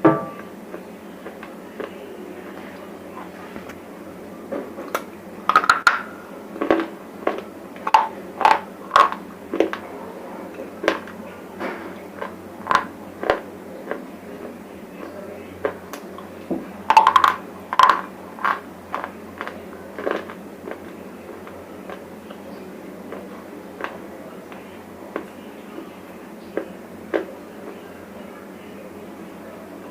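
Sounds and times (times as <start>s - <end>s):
crunching dry chips in mouth: 6.6s - 9.8s, 17.0s - 22.1s.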